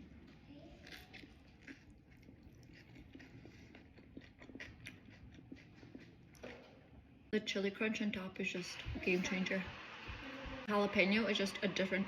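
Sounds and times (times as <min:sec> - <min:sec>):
faint chewing crunches: 0:00.0 - 0:06.5.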